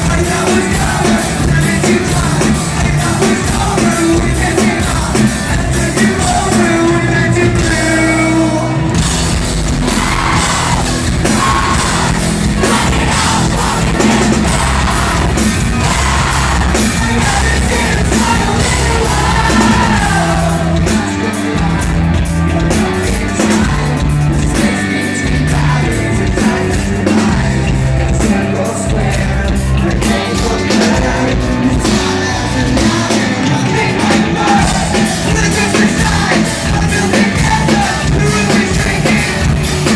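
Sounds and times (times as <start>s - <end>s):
person singing and yelling: 0.0s - 9.0s, 9.8s - 39.9s
loud live rock band: 0.0s - 39.9s.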